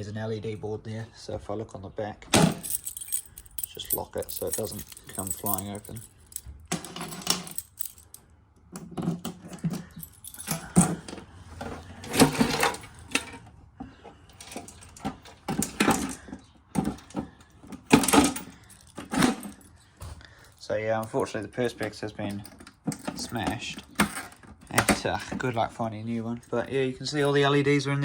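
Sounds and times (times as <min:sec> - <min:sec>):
keys jangling: 0:02.4 - 0:08.2, 0:09.5 - 0:11.1, 0:17.9 - 0:24.4.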